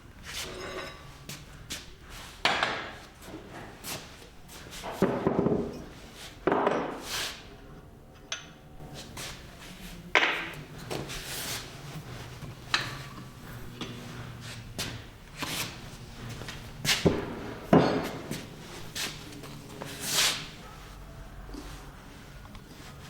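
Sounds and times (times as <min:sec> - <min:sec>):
loud knocks with scraping: 0:04.8 - 0:05.8, 0:14.6 - 0:20.6.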